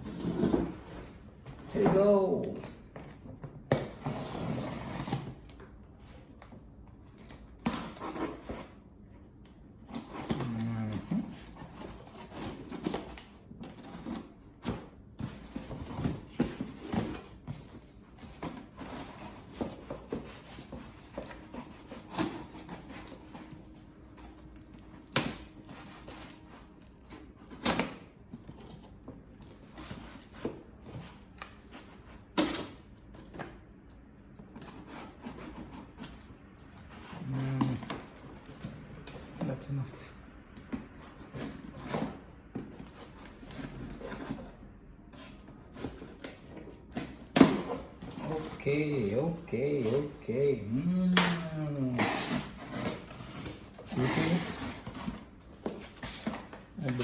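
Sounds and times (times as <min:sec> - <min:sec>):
knife cutting tape and cardboard: 0:01.8 - 0:08.8, 0:09.4 - 0:23.5, 0:45.1 - 0:57.0.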